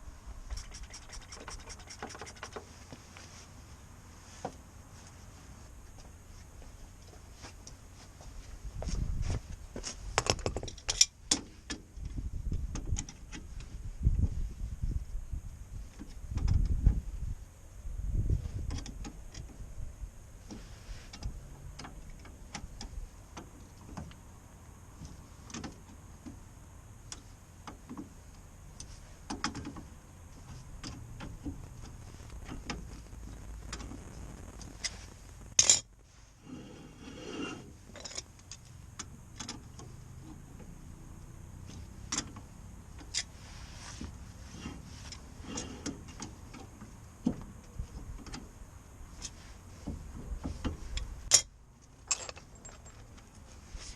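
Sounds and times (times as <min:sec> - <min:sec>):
hand tools clicking and knocking: 0:52.1 - 0:53.3.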